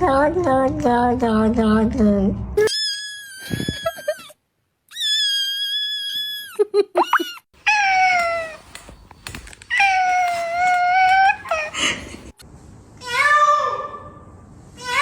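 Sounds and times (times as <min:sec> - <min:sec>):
kitten chirping squeaks: 0:02.6 - 0:08.7.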